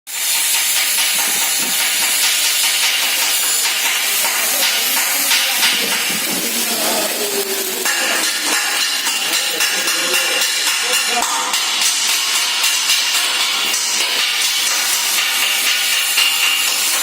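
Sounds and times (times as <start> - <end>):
welding crackling hiss: 0.1 - 17.0.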